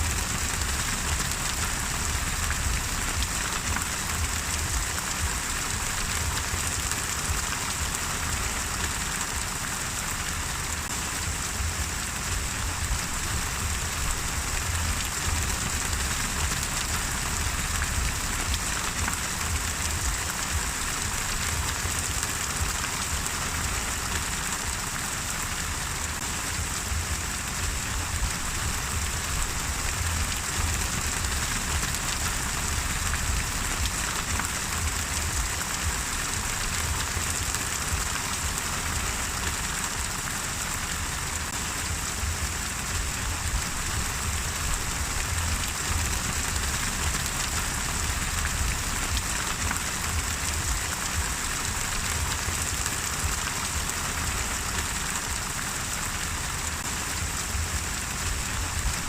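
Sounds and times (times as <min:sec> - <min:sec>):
low rumble: 0:00.0 - 0:07.4, 0:11.1 - 0:22.7, 0:26.5 - 0:37.0, 0:41.8 - 0:52.8
steady rain falling: 0:00.0 - 0:59.0.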